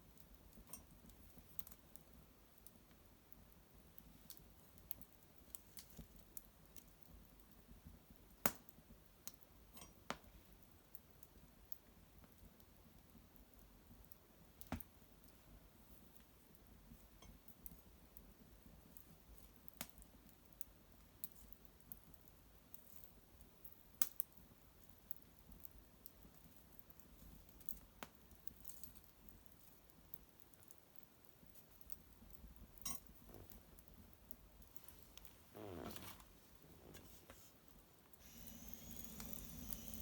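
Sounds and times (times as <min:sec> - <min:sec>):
small fire crackling: 0:00.0 - 0:40.0.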